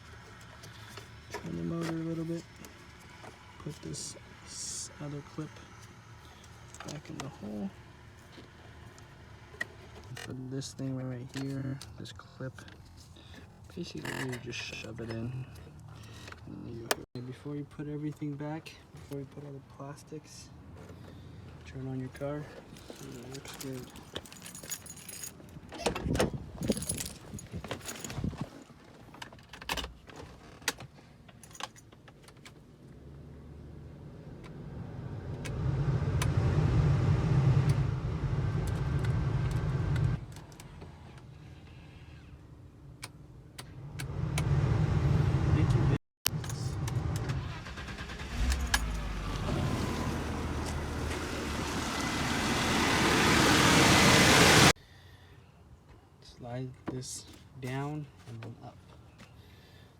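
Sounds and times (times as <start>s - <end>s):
heater blower motor running: 49.4s - 54.7s.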